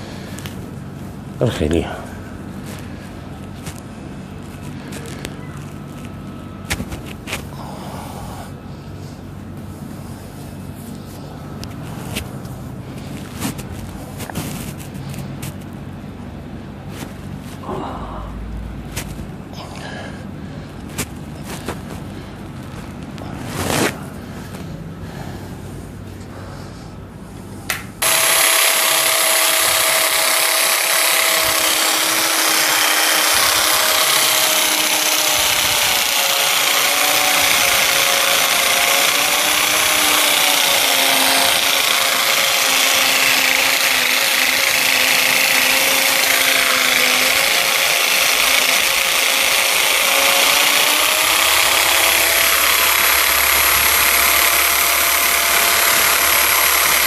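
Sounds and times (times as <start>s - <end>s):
small electric motor whining: 28.0s - 57.0s.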